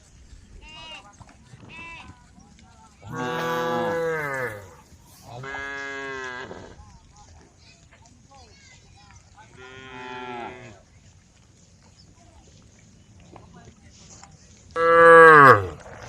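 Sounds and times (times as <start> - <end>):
cows mooing: 3.1 - 4.8, 14.8 - 15.9.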